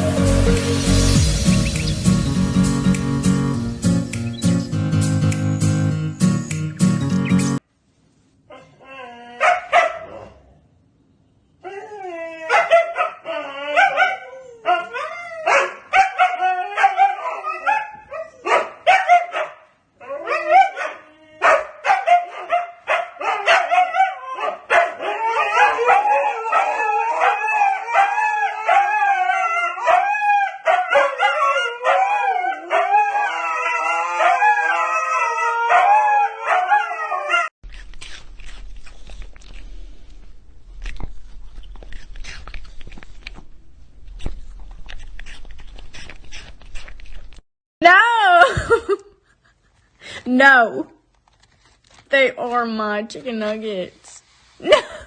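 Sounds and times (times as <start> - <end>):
dog howling and whining: 8.5 - 10.4, 11.6 - 19.3, 20.0 - 37.5.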